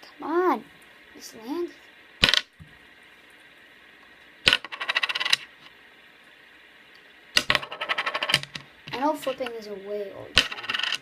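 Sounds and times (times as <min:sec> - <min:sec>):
metal bearing clicking and rattling on table: 0:04.5 - 0:05.5, 0:07.4 - 0:08.6, 0:10.4 - 0:11.0.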